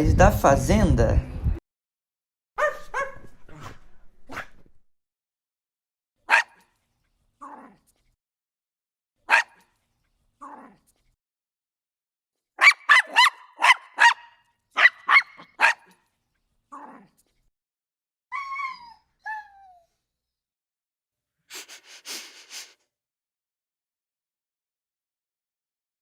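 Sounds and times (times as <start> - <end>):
dog barking: 2.6 - 4.7, 6.3 - 6.7, 9.3 - 9.7, 12.6 - 16.0.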